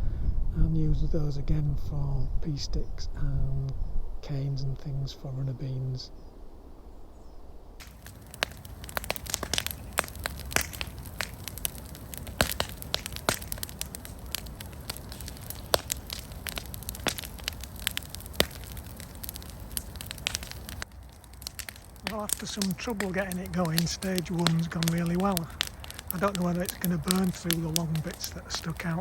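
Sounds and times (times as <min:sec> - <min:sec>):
low rush of flame: 0:07.5 - 0:29.0
bonfire crackling and popping: 0:07.8 - 0:29.0.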